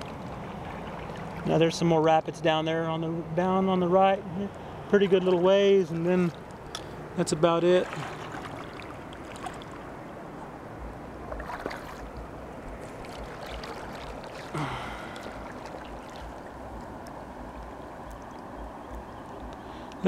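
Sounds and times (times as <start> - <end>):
river water rushing: 4.2 - 20.0.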